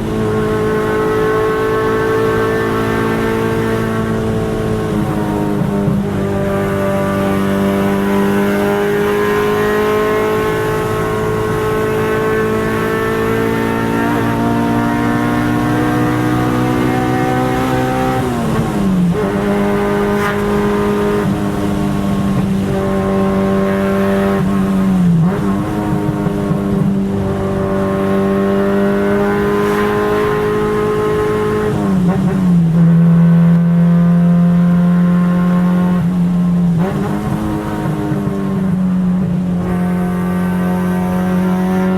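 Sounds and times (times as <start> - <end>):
car engine revving high: 0.0 - 41.9.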